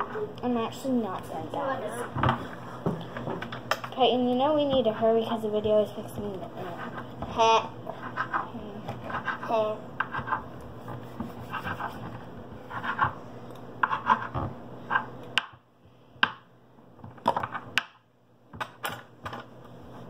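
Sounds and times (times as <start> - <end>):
knife scraping on tabletop: 7.9 - 13.2, 13.8 - 15.1.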